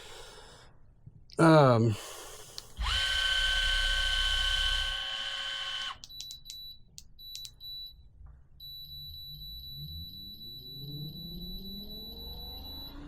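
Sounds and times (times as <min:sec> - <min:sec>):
electric motor whining: 0:02.8 - 0:06.0
clicks: 0:05.9 - 0:07.7
high electronic beeps: 0:08.6 - 0:13.0.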